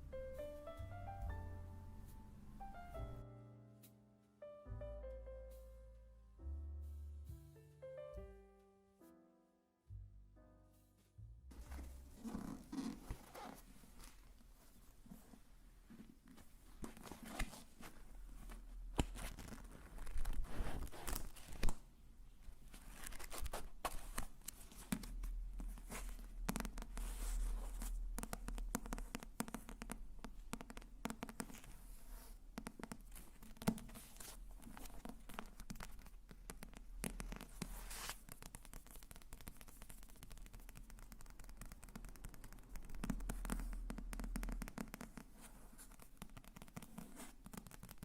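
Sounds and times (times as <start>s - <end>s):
crinkling and scratching material: 11.5s - 48.0s.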